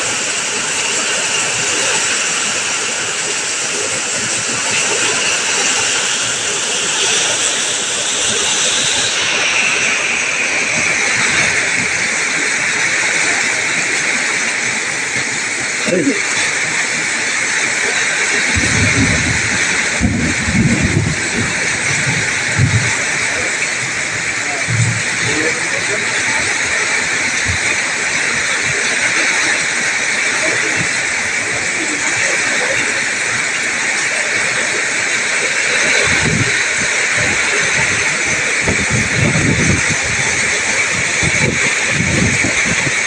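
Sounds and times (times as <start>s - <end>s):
heavy rain hissing: 0.0s - 43.0s
low rumbling surges: 0.0s - 43.0s
low rumble: 18.5s - 26.3s.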